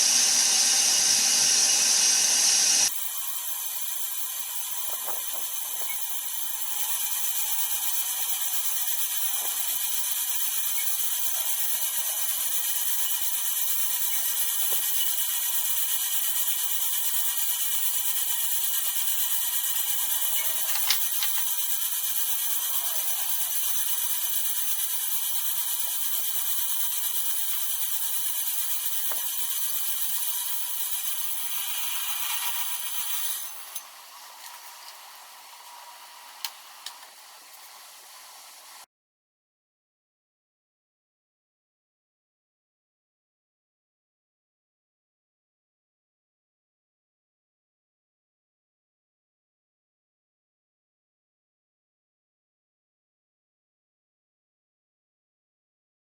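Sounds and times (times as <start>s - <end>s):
loud power tool: 0.0s - 34.1s
high-pitched mechanical whir: 0.0s - 36.9s.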